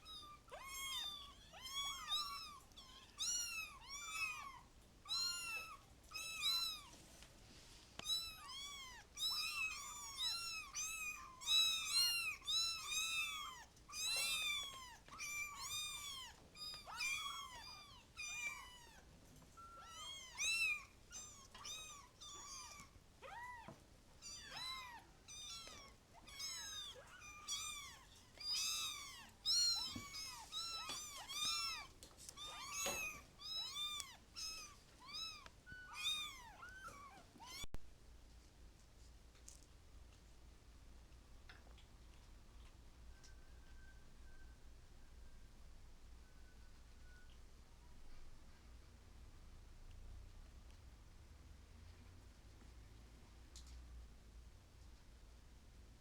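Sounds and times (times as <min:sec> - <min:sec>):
kittens mewing: 0:08.1 - 0:19.0, 0:19.7 - 0:37.7.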